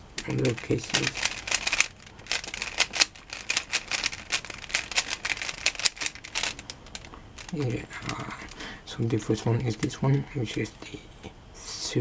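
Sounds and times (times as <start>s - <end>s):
puzzle cube plastic clicks: 0.2s - 8.7s.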